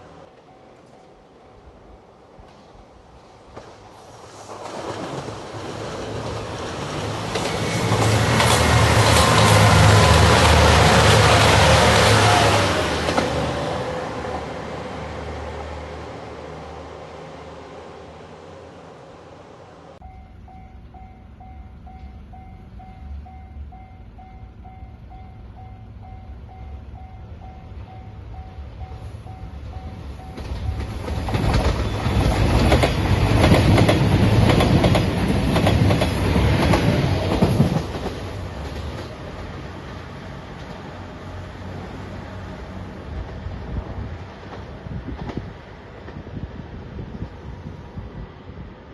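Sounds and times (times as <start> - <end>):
level crossing warning bell: 0.3 - 1.7, 20.0 - 31.0
train wheels clicking on rail joints: 2.4 - 14.5, 29.9 - 41.5, 42.7 - 46.5
diesel train engines humming: 5.7 - 48.9.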